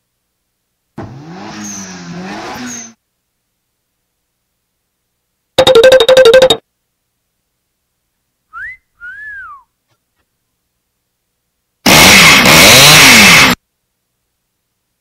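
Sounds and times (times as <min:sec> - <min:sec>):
wolf whistle: 0:08.5 - 0:09.7.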